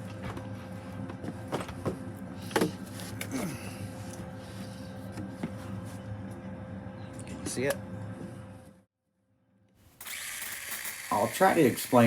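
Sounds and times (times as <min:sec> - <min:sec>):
mini chainsaw motor hum: 0:10.0 - 0:12.0
short whirs falling in pitch: 0:10.0 - 0:12.0.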